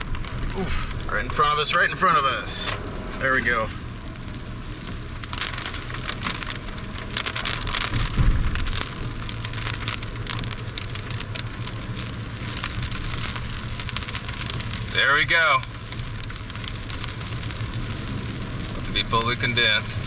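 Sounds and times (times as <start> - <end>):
engine humming: 0.0 - 20.0
rain striking a vehicle: 0.0 - 20.0
heavy low thump: 7.9 - 9.1.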